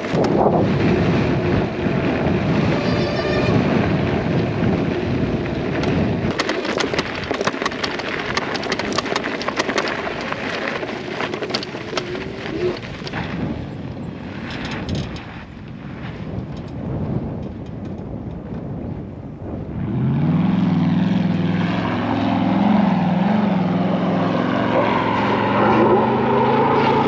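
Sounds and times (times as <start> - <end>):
tyres crackling over gravel: 0.0 - 18.5
wind rumbling on microphone: 0.0 - 27.0.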